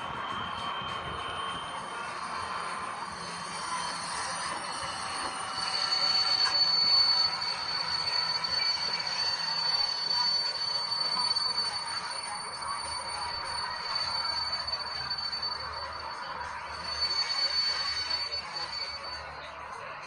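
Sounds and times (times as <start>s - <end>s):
model train high-pitched whine: 0.0s - 20.0s.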